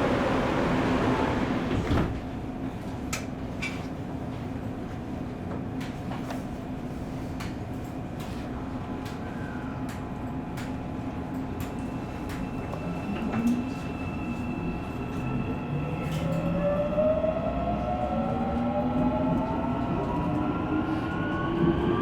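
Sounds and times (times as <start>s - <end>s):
subway doors sliding shut: 0.0s - 2.5s, 11.8s - 22.0s
subway car hum: 0.0s - 22.0s.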